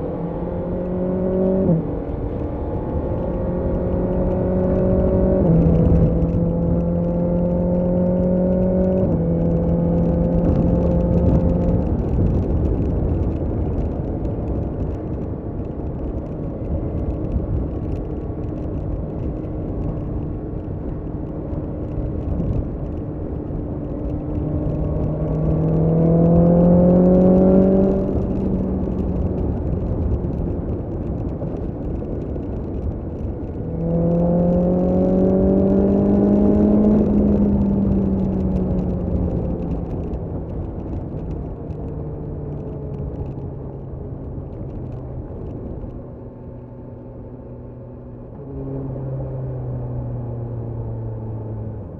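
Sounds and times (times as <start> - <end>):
motorcycle engine accelerating: 0.0 - 51.9
wind and road noise: 0.0 - 51.9.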